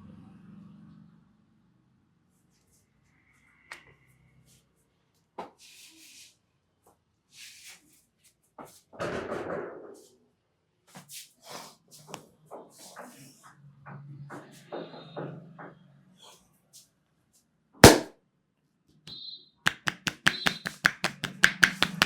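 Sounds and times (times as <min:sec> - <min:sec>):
hands slapping and tapping: 0:17.8 - 0:18.1, 0:19.7 - 0:22.0
hands rubbing hair and skin: 0:19.7 - 0:22.0.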